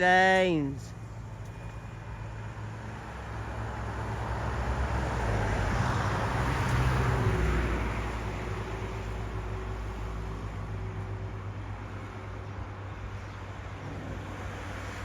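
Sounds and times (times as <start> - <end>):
motor vehicle passing by: 3.0 - 15.0.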